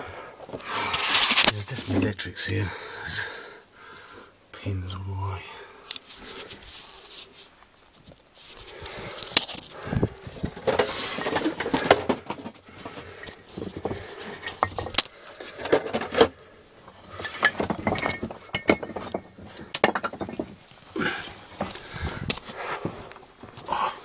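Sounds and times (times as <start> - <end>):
scraping and shuffling: 0.4 - 3.2, 5.9 - 24.0
bricks knocking and clinking: 9.3 - 16.3, 17.0 - 20.6.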